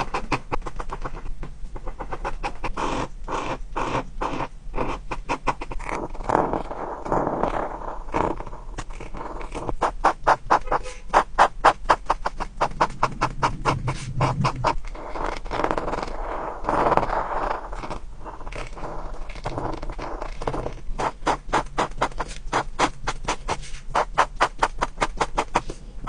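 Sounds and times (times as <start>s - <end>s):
coloring strokes scratching paper: 0.0s - 25.8s.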